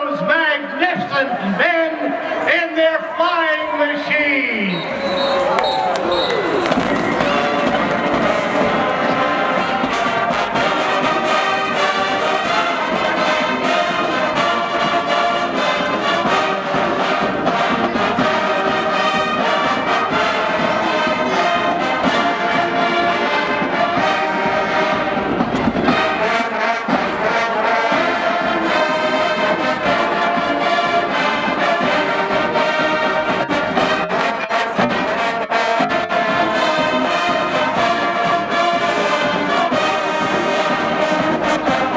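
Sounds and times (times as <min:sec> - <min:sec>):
trombones and trumpets: 0:03.7 - 0:41.9
brass band playing: 0:04.7 - 0:41.9.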